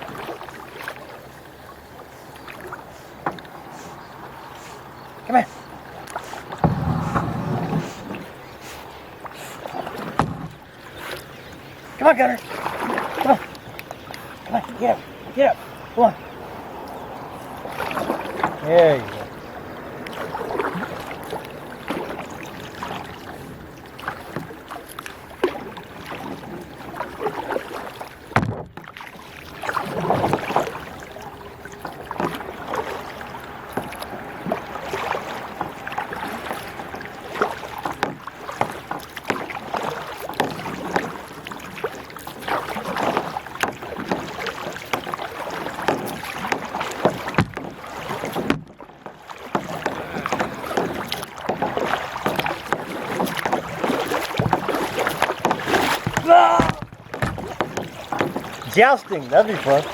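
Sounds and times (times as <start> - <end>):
paddle splashing and dripping: 0.0 - 59.9
sharp knocks and clicks: 28.4 - 28.9, 45.8 - 47.7, 48.3 - 48.8, 55.4 - 58.6.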